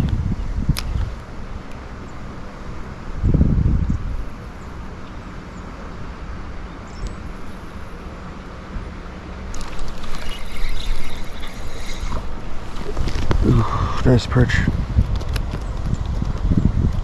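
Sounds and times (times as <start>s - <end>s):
wind on microphone: 0.0s - 1.4s, 3.1s - 4.5s, 9.6s - 17.0s.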